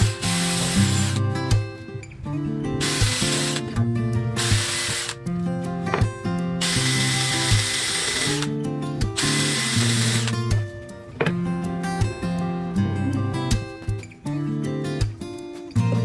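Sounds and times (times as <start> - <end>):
power tool running: 0.0 - 1.4, 2.8 - 5.2, 5.9 - 8.6, 9.2 - 10.5
acoustic guitar music: 0.0 - 16.0.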